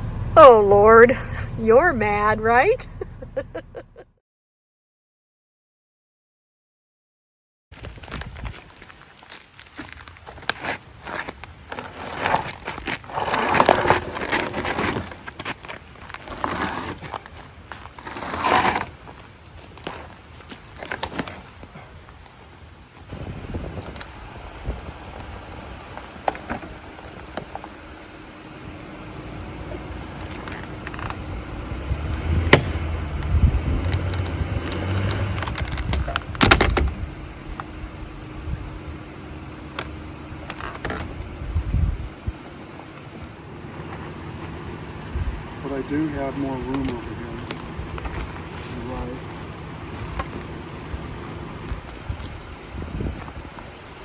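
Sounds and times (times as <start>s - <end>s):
engine knocks: 0.0s - 3.4s, 23.1s - 53.8s
pickup truck engine rumbling: 0.0s - 4.1s, 8.3s - 54.0s
twigs and brush crackling: 7.7s - 54.0s.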